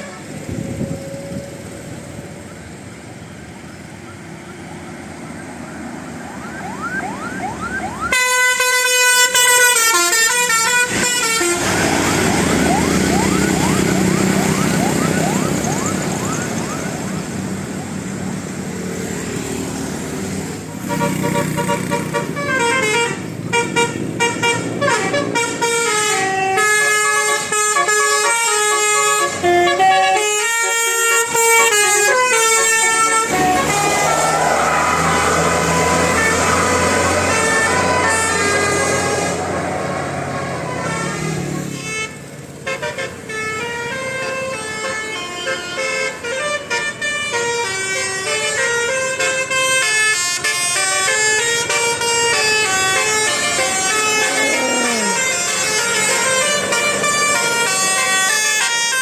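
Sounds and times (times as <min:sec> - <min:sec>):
vehicle noise: 0:00.0 - 0:59.0
musical bus air horn melody: 0:08.1 - 0:12.4, 0:20.7 - 0:39.6, 0:40.2 - 0:59.0.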